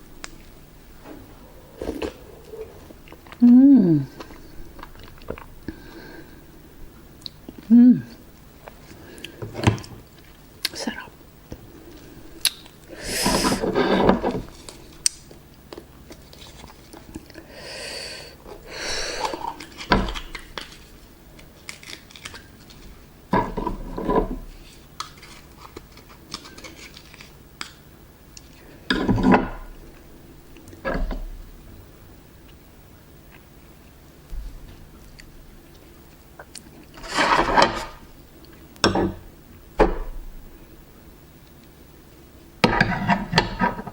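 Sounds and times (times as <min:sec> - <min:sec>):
chewing: 0:04.1 - 0:05.6.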